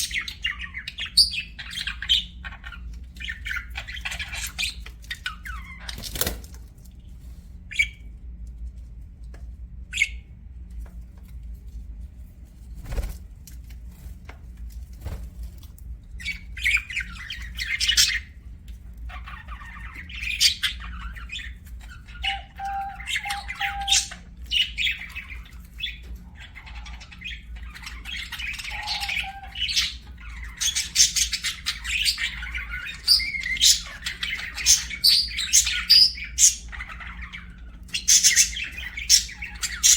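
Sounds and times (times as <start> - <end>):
budgerigars chirping and squawking: 0.0 - 6.4, 9.9 - 10.3, 16.2 - 39.9
steady low hum: 6.4 - 39.9.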